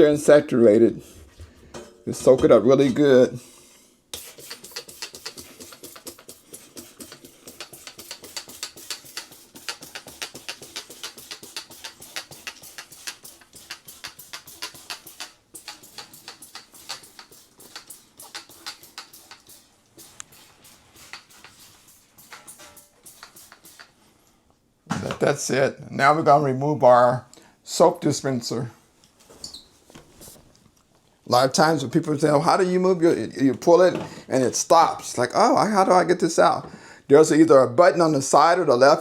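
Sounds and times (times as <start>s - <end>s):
spray bottle squirting: 4.1s - 24.0s.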